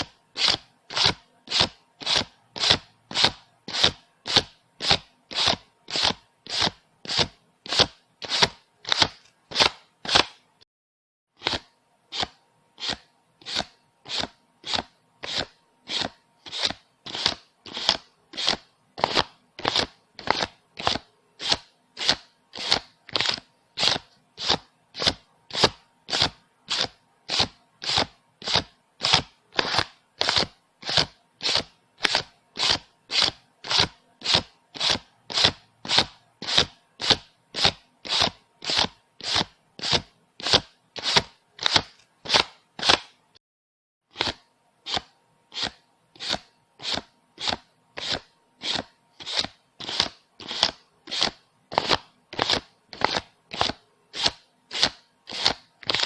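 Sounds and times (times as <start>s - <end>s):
banknotes being counted: 0.0s - 10.4s, 11.4s - 43.2s, 44.1s - 56.0s.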